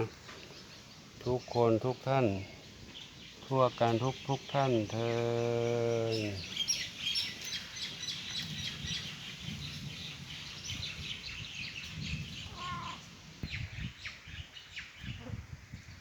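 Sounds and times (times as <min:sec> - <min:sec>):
small birds chirping: 0:00.0 - 0:16.0
wavering bird call: 0:12.4 - 0:13.0.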